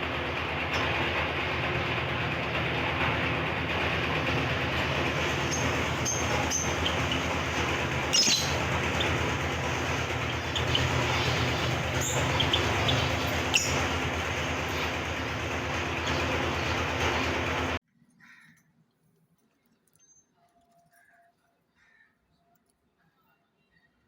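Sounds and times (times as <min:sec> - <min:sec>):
mechanical rumble and hum: 0:00.0 - 0:17.8
finches chirping: 0:04.8 - 0:17.8.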